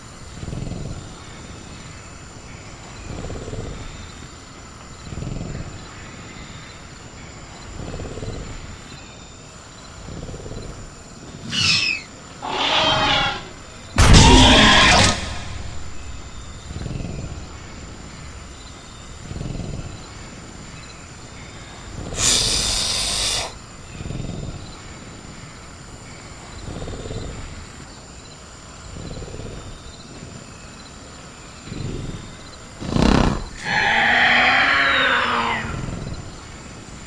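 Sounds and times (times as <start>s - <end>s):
cricket chirr: 0.0s - 37.0s
screech falling in pitch: 12.4s - 18.3s
hiss-like burst: 12.4s - 20.3s, 22.2s - 23.6s.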